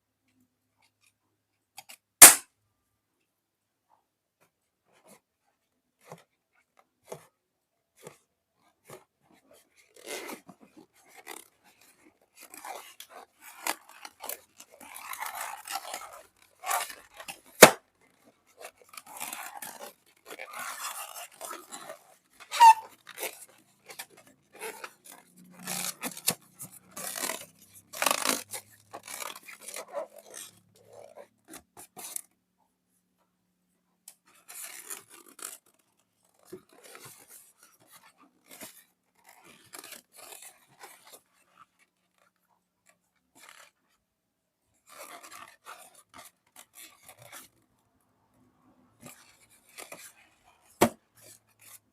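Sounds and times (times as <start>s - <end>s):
loud sharp snap: 2.2s - 2.4s, 17.6s - 17.8s
crackling and scraping handling: 7.9s - 32.4s, 34.0s - 47.8s, 49.0s - 51.9s.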